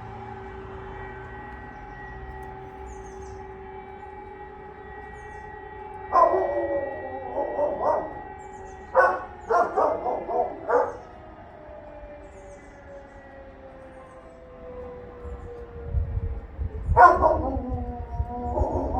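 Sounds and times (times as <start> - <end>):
distant electronic siren: 0.0 - 18.9
dog barking: 6.1 - 6.6, 7.4 - 8.2, 8.9 - 11.0, 17.0 - 17.7.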